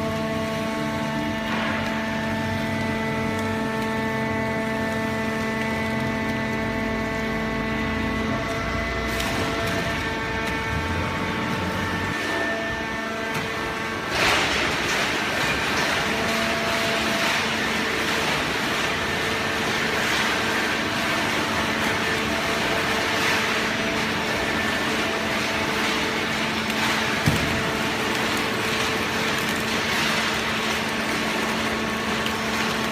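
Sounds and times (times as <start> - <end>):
baler machine humming: 0.0 - 32.9.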